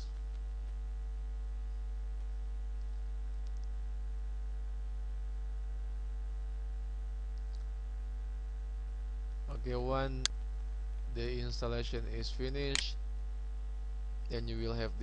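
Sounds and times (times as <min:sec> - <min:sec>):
electrical mains hum: 0:00.0 - 0:15.0
faint mouse clicks: 0:02.8 - 0:03.8, 0:07.3 - 0:07.7.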